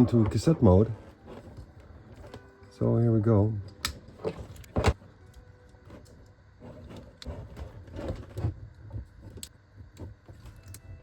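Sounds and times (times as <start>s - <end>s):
plastic parts rubbing: 5.8s - 10.7s.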